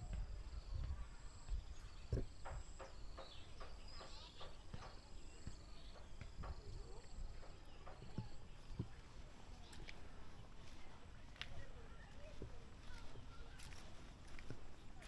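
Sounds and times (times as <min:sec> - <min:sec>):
soft footsteps: 0:03.6 - 0:15.0.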